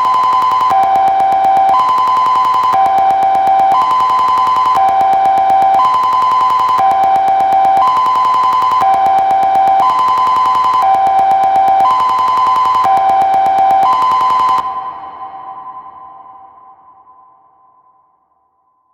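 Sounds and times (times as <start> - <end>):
two-tone fire alarm: 0.0 - 16.8.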